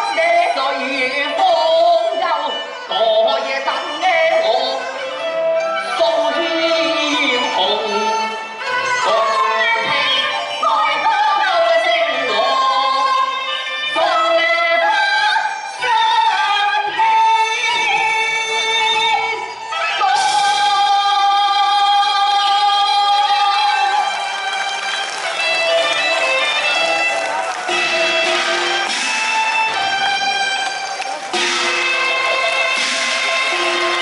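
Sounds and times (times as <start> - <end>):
opera singing: 0.0 - 5.0, 5.8 - 24.4
opera music: 0.0 - 34.0.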